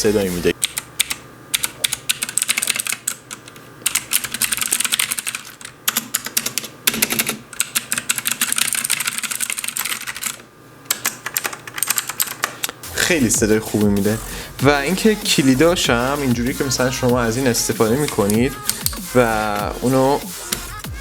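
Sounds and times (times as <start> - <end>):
mechanical keyboard typing: 0.6 - 12.8.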